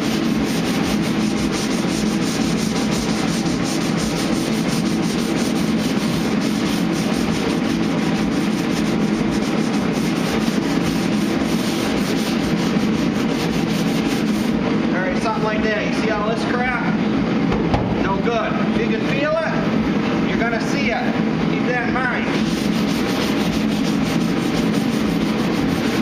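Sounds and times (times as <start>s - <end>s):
sandpaper scrubbing on painted panel: 0.0s - 15.6s, 21.7s - 26.0s.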